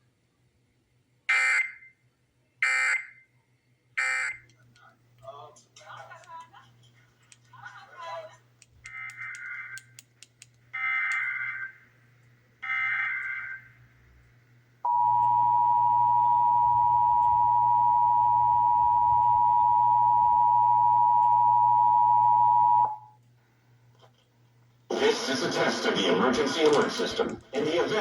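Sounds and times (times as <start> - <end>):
two-tone attention signal: 14.9 - 23.0
warbling data tone bursts: 14.9 - 23.0.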